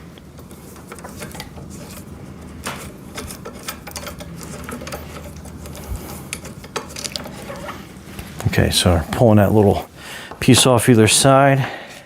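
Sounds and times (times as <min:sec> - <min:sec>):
small metal parts clinking: 0:02.6 - 0:07.8.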